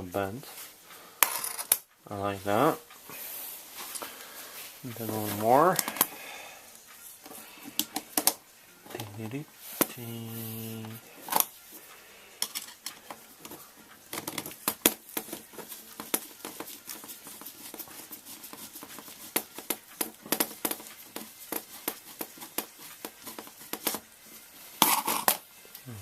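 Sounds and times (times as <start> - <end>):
soft rustling: 2.3 - 7.6
small tools clicking and rattling: 10.9 - 11.6, 12.4 - 24.0, 24.8 - 25.9.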